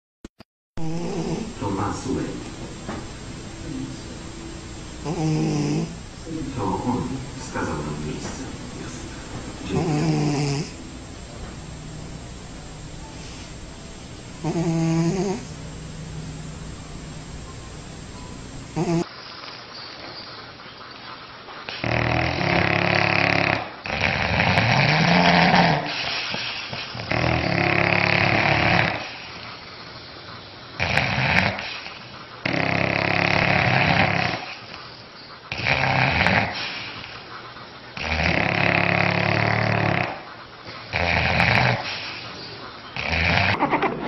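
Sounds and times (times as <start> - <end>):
animal snoring: 0.8 - 3.0, 3.8 - 11.3, 12.1 - 15.8, 18.6 - 19.1, 21.7 - 29.4, 30.8 - 34.8, 35.5 - 43.7.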